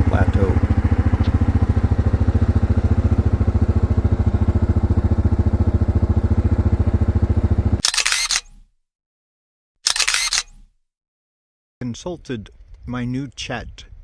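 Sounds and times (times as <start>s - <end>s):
atv engine running: 0.0s - 7.8s.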